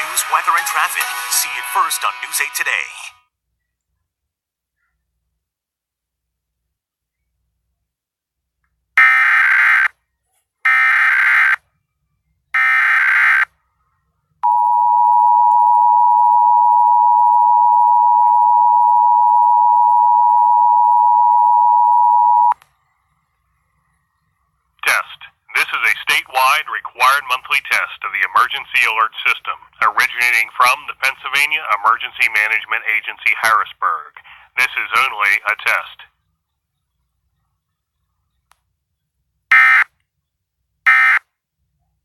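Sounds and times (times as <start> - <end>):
promo music and voice: 0.0 - 3.2
faint low hum: 13.5 - 40.8.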